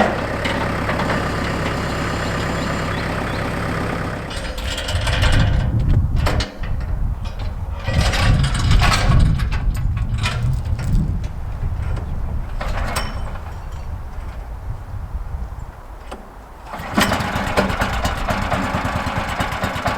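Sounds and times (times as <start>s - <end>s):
diesel tractor engine running: 0.0s - 19.9s
metal clanks and rattles: 4.1s - 14.7s.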